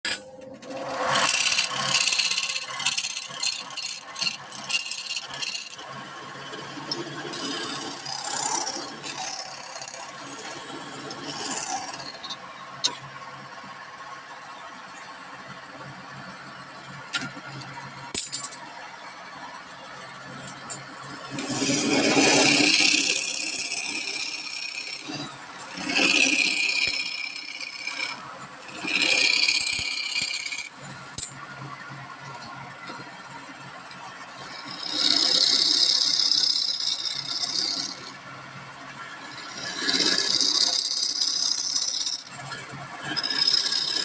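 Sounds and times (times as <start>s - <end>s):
turning tool scraping wood: 0.7s - 5.9s, 6.6s - 12.4s, 21.2s - 30.8s, 34.5s - 38.1s, 39.3s - 42.3s, 43.0s - 44.0s
wood lathe humming: 0.7s - 12.2s, 21.0s - 30.9s, 34.4s - 38.2s, 39.2s - 44.0s.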